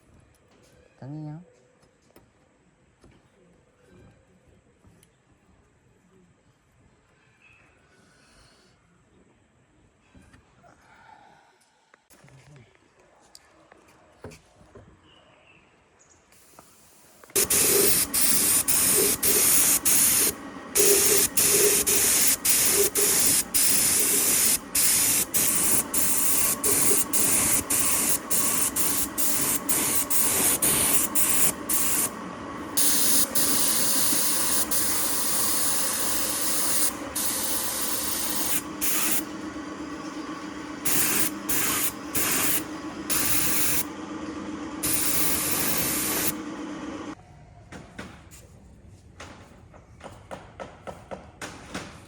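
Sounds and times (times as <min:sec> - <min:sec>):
spray gun hissing: 0:16.4 - 0:47.2.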